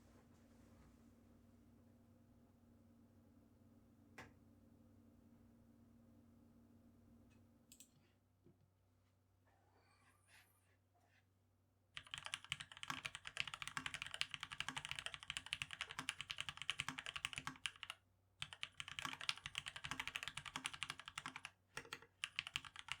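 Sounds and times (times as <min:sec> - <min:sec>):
mechanical keyboard typing: 0:12.0 - 0:23.0.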